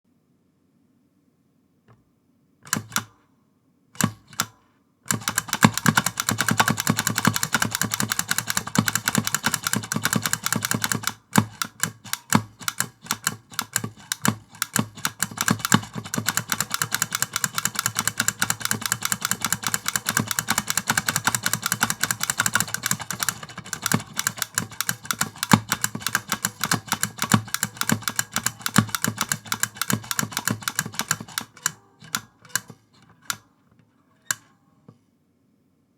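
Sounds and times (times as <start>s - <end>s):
mechanical key switches clicking: 5.1s - 33.4s.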